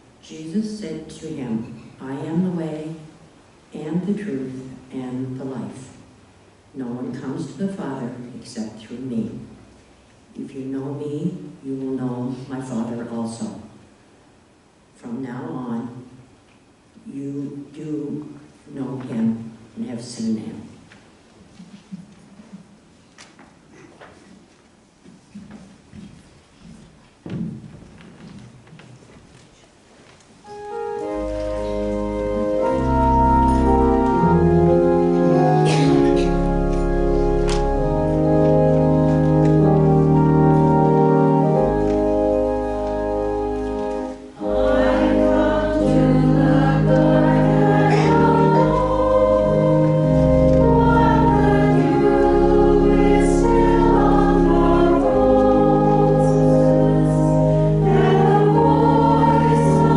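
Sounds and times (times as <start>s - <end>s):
organ playing chords: 30.4s - 59.9s
voices singing a hymn: 30.5s - 59.9s.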